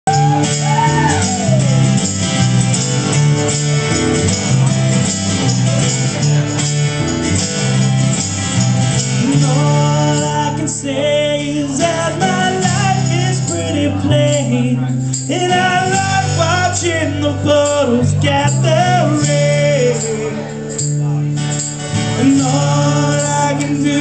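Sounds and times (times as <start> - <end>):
bass line: 0.0 - 24.0
guitars strumming: 0.1 - 24.0
person singing: 9.2 - 20.8, 22.0 - 24.0.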